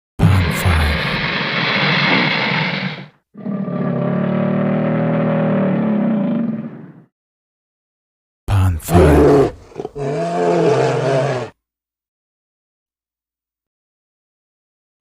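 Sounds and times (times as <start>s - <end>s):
alligator hissing: 0.4s - 7.0s
alligator low rumbling growl: 0.4s - 7.0s.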